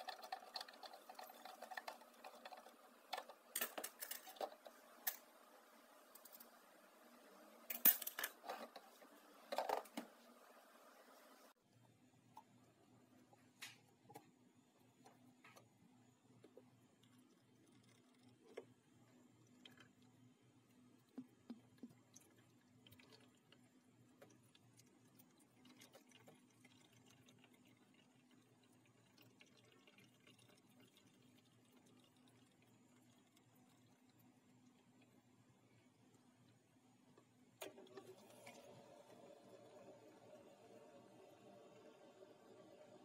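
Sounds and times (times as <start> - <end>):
water ticks and drips: 0.0 - 3.6, 19.4 - 36.6
faint steady hum: 0.0 - 43.0.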